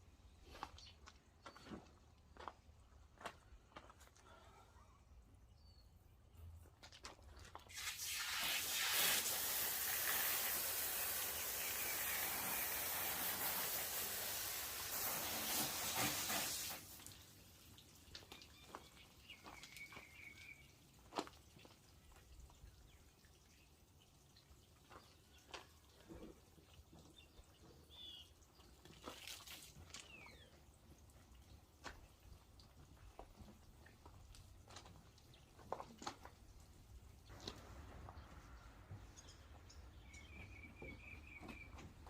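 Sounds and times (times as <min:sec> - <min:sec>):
water dripping: 0:06.9 - 0:37.6
water spraying with a hiss: 0:07.7 - 0:17.8.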